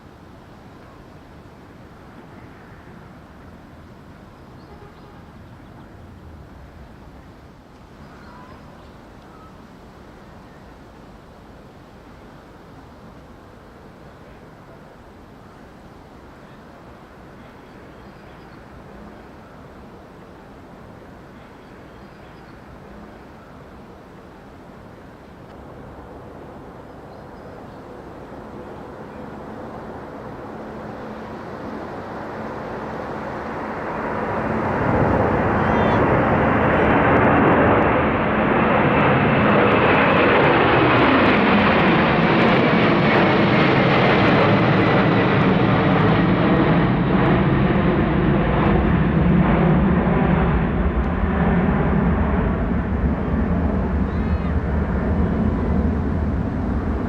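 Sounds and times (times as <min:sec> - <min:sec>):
airliner engines roaring: 0:00.0 - 0:57.0
high jet whine: 0:22.6 - 0:57.0.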